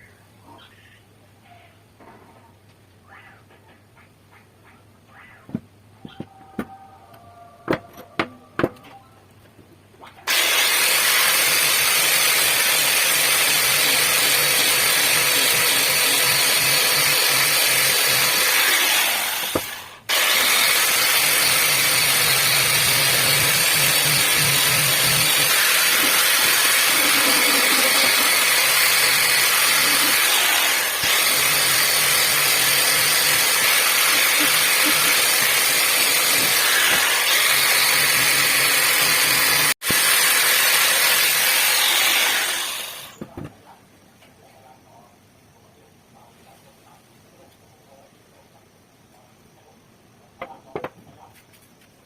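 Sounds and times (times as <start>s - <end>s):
power tool running: 10.2s - 43.3s.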